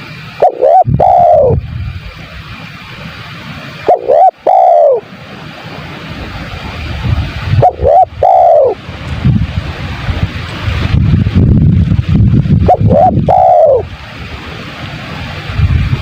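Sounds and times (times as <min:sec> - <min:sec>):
steady background hiss: 0:00.0 - 0:16.0
dove cooing: 0:00.4 - 0:01.6, 0:03.8 - 0:05.1, 0:07.6 - 0:08.8, 0:12.7 - 0:13.9.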